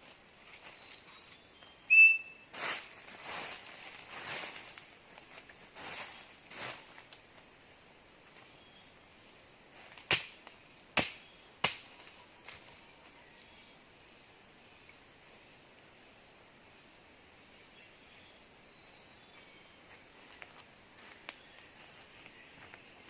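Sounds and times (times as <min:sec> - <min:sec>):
forest insects humming: 0:00.0 - 0:23.0
high whistled calls: 0:00.8 - 0:02.5.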